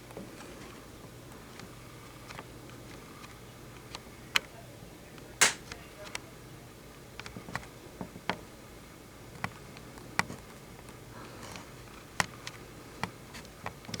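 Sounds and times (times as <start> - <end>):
sharp irregular clicks: 5.4 - 5.6.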